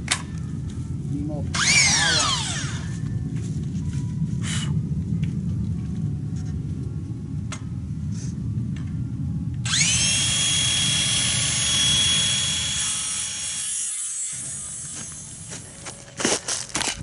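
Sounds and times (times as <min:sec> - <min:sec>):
electric power tool motor whining: 0:01.5 - 0:02.9, 0:09.7 - 0:15.5.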